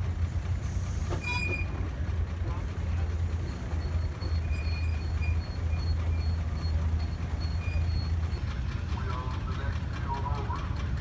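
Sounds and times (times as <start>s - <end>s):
heavy machinery humming: 0.0s - 8.4s.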